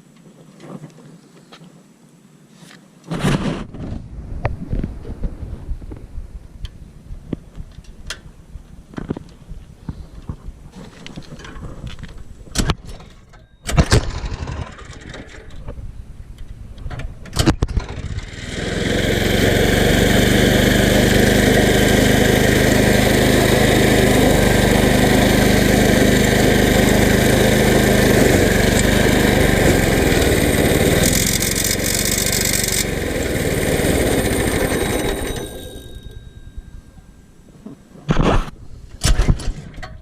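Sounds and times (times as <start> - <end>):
go-kart engine running: 13.8 - 15.6, 17.4 - 36.8.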